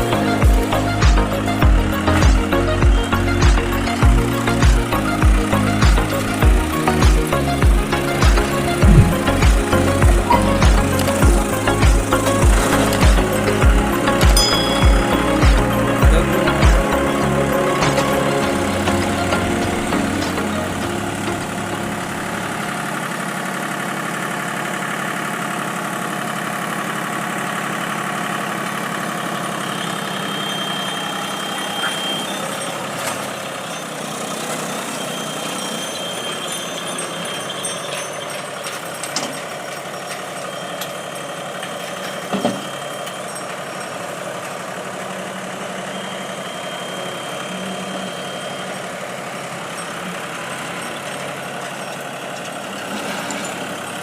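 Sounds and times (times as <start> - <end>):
diesel engine running: 0.0 - 54.0
high steady tone: 8.6 - 10.5, 14.4 - 17.7, 45.0 - 51.9.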